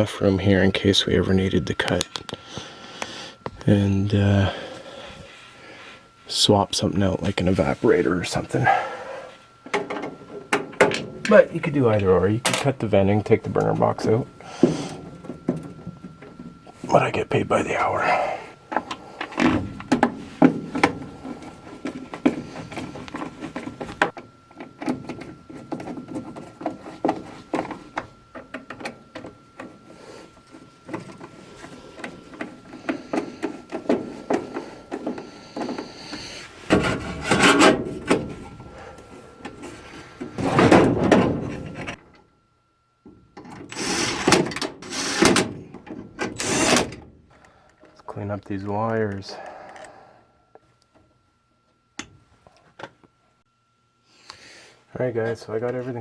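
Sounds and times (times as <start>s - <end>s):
faint high whine: 0.0s - 56.0s
metal rubbing and sliding: 36.3s - 38.6s.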